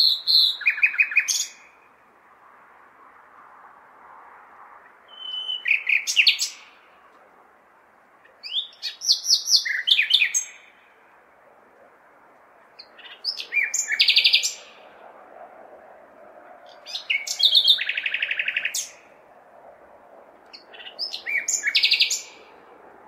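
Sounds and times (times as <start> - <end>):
nightingale singing: 0.0 - 1.9, 5.1 - 7.0, 8.2 - 11.0, 12.8 - 14.8, 16.7 - 19.1, 20.5 - 22.5
city background hum: 0.0 - 23.0.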